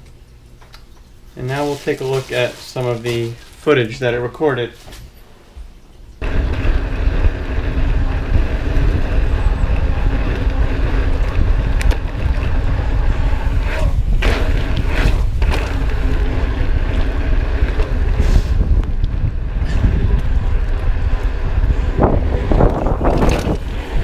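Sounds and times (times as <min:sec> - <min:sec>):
wind buffeting microphone: 0:06.2 - 0:24.0.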